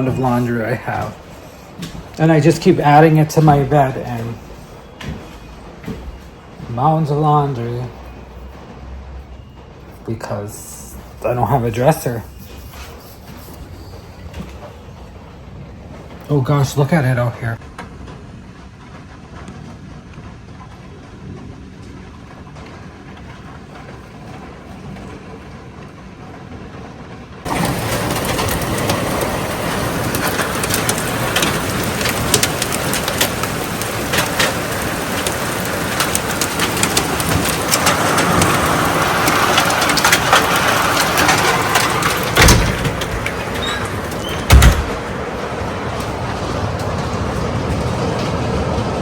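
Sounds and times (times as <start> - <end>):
heavy rain: 0.0 - 49.0
wind: 0.0 - 49.0
raindrops ticking: 27.5 - 49.0
heavy thumps: 44.4 - 45.1.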